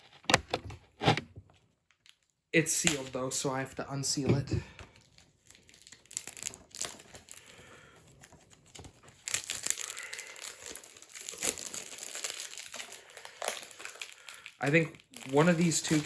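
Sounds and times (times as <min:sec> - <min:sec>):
plastic shrink-wrap crinkling: 0:01.9 - 0:03.2, 0:04.9 - 0:16.0.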